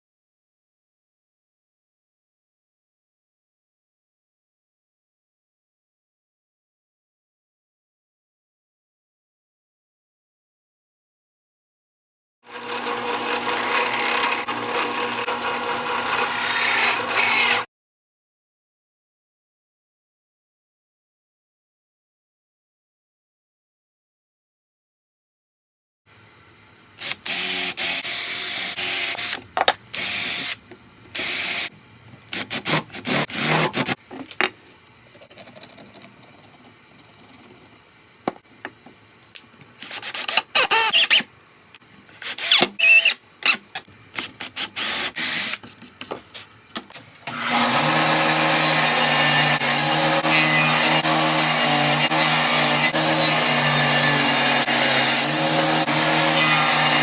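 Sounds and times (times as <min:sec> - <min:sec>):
power tool running: 0:12.5 - 0:17.7, 0:27.0 - 0:31.7, 0:32.3 - 0:34.0, 0:47.2 - 0:57.0.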